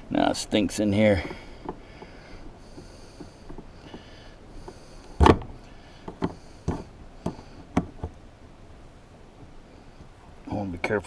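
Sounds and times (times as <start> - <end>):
faint hisses: 0.0 - 11.0.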